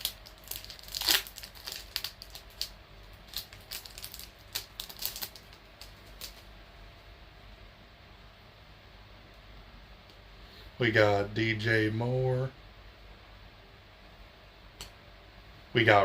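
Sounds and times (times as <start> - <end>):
wrapper tearing and crinkling: 0.0 - 6.5
faint steady hum: 0.0 - 16.0.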